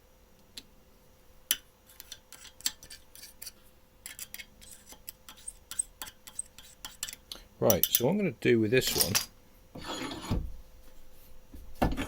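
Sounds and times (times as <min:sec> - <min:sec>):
metal parts clinking: 0:08.8 - 0:09.3.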